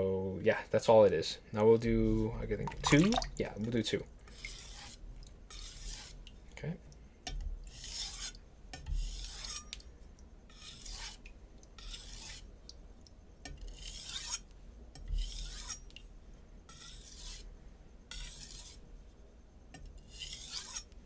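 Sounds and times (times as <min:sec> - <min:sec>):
knife scraping on whetstone: 0:04.3 - 0:06.3, 0:07.7 - 0:09.8, 0:10.5 - 0:11.2, 0:11.8 - 0:12.5, 0:13.5 - 0:15.9, 0:16.7 - 0:17.5, 0:18.1 - 0:18.8, 0:20.0 - 0:21.0.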